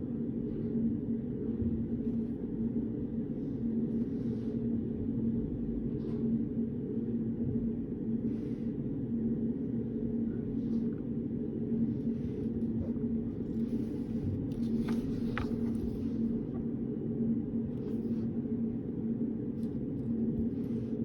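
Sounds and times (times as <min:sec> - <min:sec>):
low room hum: 0:00.0 - 0:21.0
soft rustles: 0:11.8 - 0:16.7.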